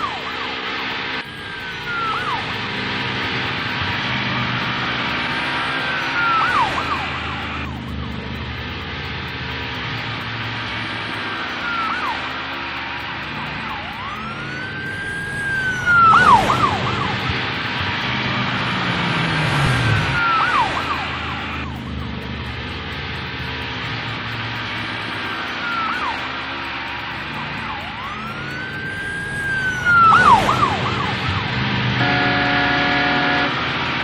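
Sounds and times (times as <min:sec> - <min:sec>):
police siren wailing: 0:00.0 - 0:34.0.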